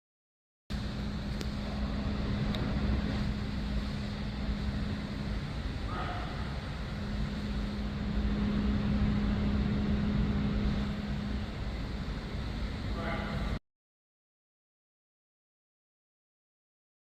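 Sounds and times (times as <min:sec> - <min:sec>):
machine humming: 0:00.7 - 0:13.6.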